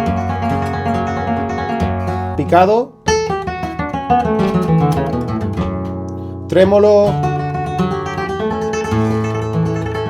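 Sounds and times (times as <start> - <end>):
flamenco guitar: 0.0 - 10.0
person speaking: 2.3 - 3.0, 6.5 - 7.3.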